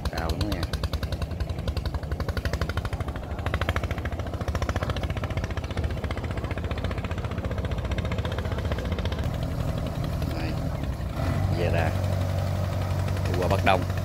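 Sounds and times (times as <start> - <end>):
diesel engine chugging: 0.0 - 14.0.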